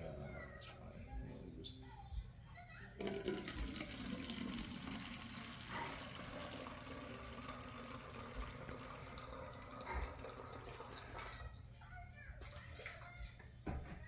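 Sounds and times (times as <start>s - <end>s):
water pouring into container: 3.0s - 11.6s.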